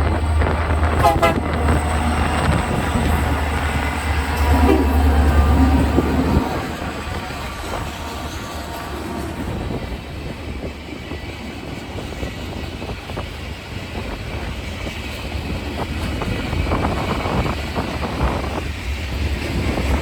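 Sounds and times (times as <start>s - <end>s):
freight train rumbling: 0.0s - 20.0s
train clanks and wheel clicks: 0.0s - 20.0s.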